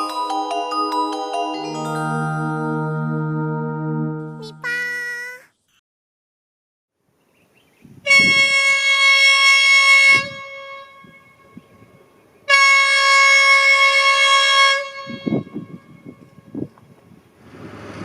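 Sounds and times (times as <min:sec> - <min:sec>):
locomotive air horn blasts: 0:08.0 - 0:16.6.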